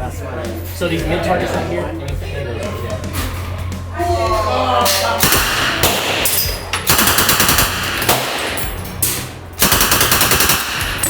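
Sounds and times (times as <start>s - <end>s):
automatic rifle bursts: 5.2s - 8.6s, 9.6s - 11.0s
single rifle shots: 5.2s - 8.8s.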